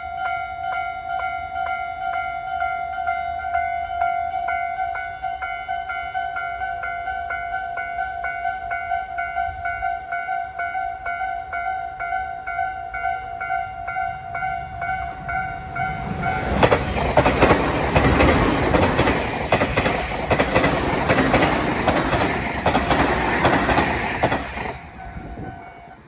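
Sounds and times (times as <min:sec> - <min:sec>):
level crossing warning bell: 0:00.0 - 0:26.0
train passing: 0:00.0 - 0:26.0
wheels clattering over rail joints: 0:15.0 - 0:26.0.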